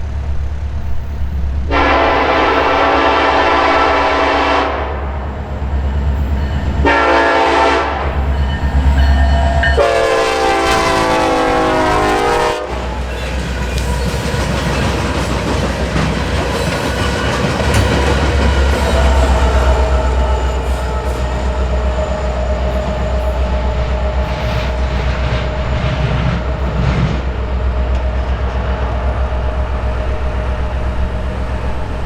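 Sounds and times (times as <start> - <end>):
locomotive engine rumble: 0.0 - 32.0
locomotive horn blasts: 1.7 - 5.1, 6.8 - 14.1
train wheels clattering on rails: 5.3 - 29.1.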